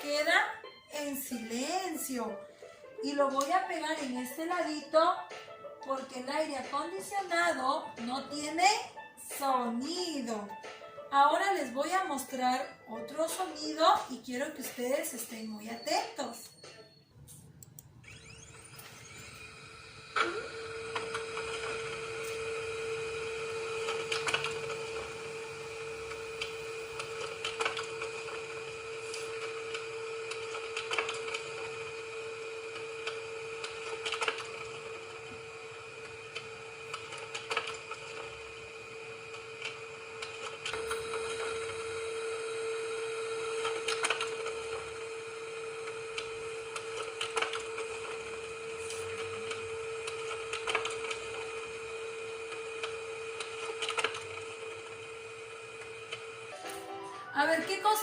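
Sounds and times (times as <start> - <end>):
printer humming and clicking: 17.4 - 56.9.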